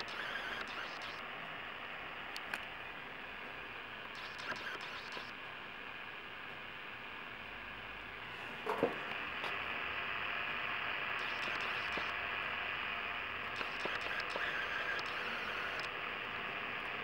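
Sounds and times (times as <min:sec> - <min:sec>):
sharp clicks: 0:00.0 - 0:01.2, 0:04.2 - 0:05.3, 0:11.2 - 0:12.2, 0:13.5 - 0:15.9
radio static hiss: 0:00.0 - 0:01.4, 0:04.1 - 0:05.6, 0:10.4 - 0:17.0.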